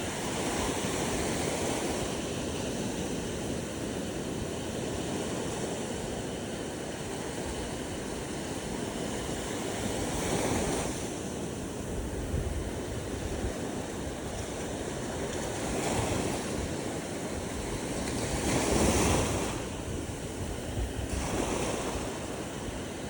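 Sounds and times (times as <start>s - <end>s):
ocean waves breaking on beach: 0.0s - 23.0s
wind buffeting microphone: 8.7s - 23.0s.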